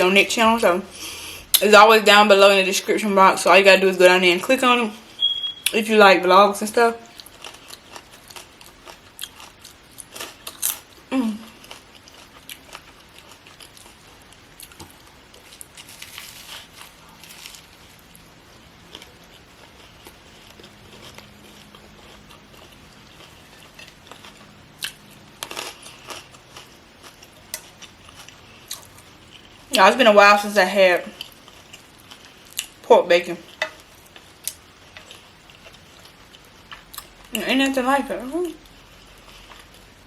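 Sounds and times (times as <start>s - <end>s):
chewing with mouth clicks: 7.0s - 18.2s, 18.8s - 29.7s, 31.1s - 32.8s, 33.4s - 37.4s, 38.6s - 40.0s.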